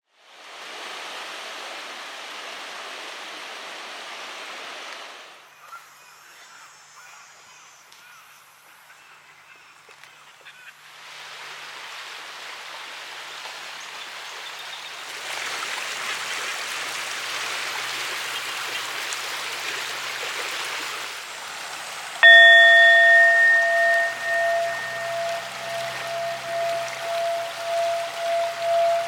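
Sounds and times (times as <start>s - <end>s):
running water: 11.1s - 29.0s
singing bowl ringing: 22.2s - 29.0s.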